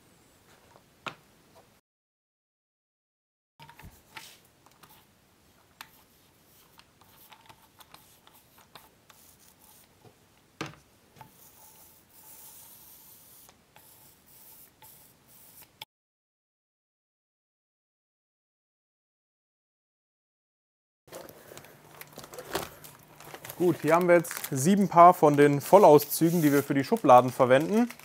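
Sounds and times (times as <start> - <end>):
paint brush rubbing strokes: 3.8 - 5.1, 5.9 - 10.0, 11.2 - 15.8, 25.1 - 27.8.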